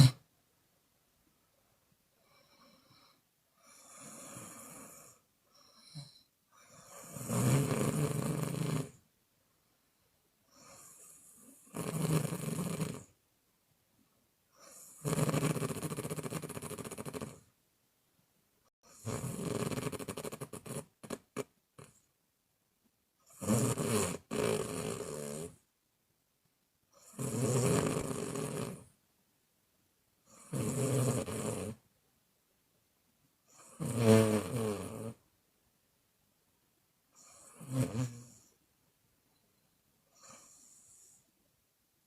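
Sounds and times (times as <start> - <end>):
woman snoring: 0.0 - 0.2, 2.2 - 9.0, 10.5 - 13.1, 14.6 - 17.5, 18.8 - 22.0, 23.3 - 25.6, 27.0 - 28.9, 30.3 - 31.8, 33.5 - 35.2, 37.2 - 38.6, 40.1 - 41.2.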